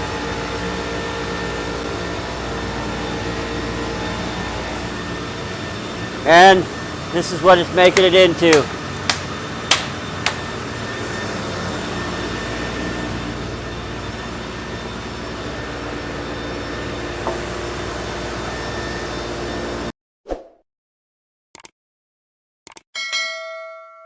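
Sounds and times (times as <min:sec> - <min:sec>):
rip saw and blower humming: 0:00.0 - 0:19.9
sharp knocks: 0:07.8 - 0:10.4.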